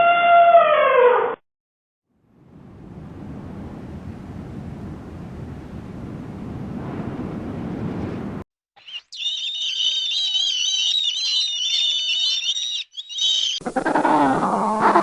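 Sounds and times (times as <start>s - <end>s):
birds chirping and warbling: 8.8s - 14.4s.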